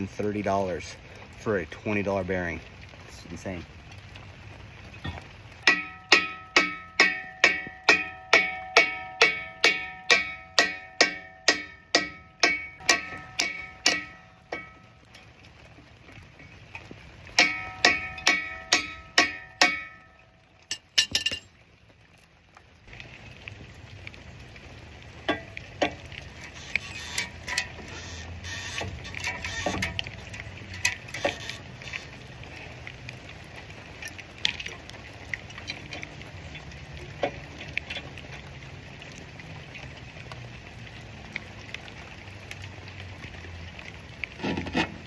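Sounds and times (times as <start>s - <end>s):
low steady background noise: 0.0s - 45.0s.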